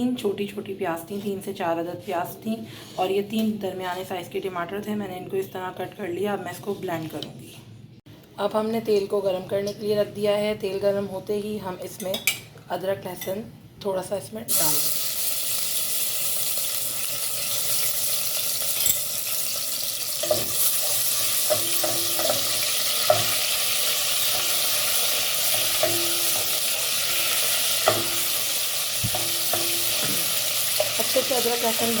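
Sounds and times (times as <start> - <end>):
paste sizzling in hot oil: 14.5 - 32.0
spoon knocking against pan: 25.5 - 26.5, 27.8 - 28.4, 29.0 - 31.0.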